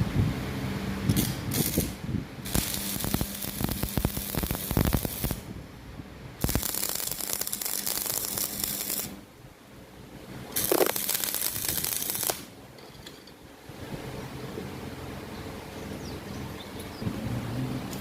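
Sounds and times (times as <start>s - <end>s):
low electrical hum: 0.0s - 18.0s
arc welding crackling: 1.0s - 5.5s, 6.4s - 9.3s, 10.6s - 12.6s.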